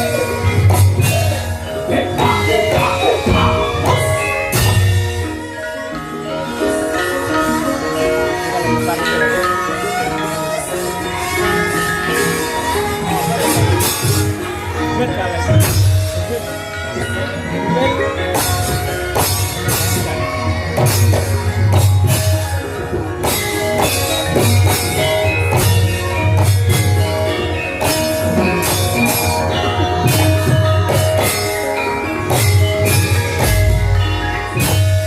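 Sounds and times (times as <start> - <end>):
drum strokes: 0.0 - 6.1, 18.3 - 35.0
ringing metallophone notes: 0.0 - 35.0.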